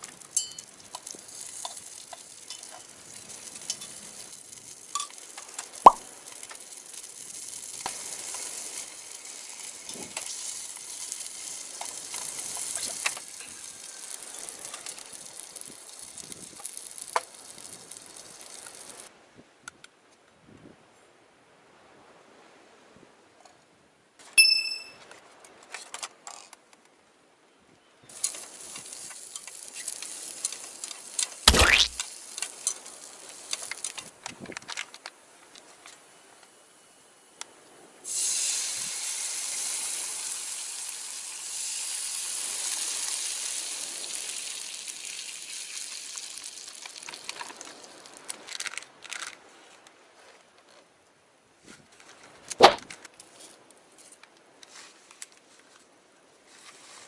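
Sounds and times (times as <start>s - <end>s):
food sizzling in a frying pan: 44.2s - 46.8s.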